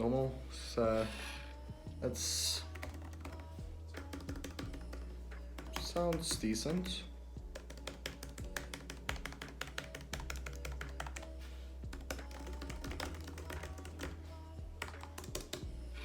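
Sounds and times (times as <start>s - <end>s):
background music: 0.0s - 16.0s.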